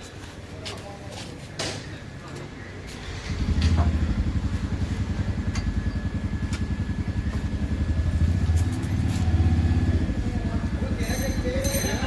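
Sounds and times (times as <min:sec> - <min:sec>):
motorcycle engine idling: 0:03.0 - 0:12.0.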